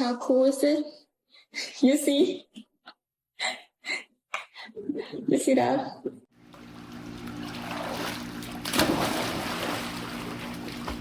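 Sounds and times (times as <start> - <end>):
water splashing and rushing: 7.3 - 11.0.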